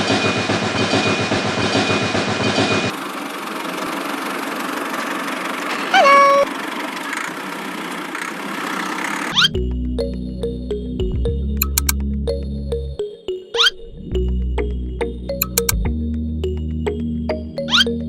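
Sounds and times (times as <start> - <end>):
small engine running: 2.9 - 9.5
loud pitched squeak: 5.8 - 6.5, 9.3 - 9.6, 13.6 - 13.8, 17.7 - 17.9.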